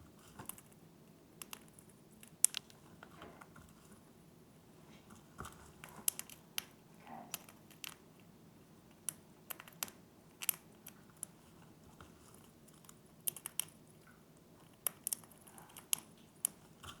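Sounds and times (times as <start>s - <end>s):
parakeet beaks and claws clicking: 1.4s - 2.8s, 5.2s - 8.3s, 8.9s - 17.0s.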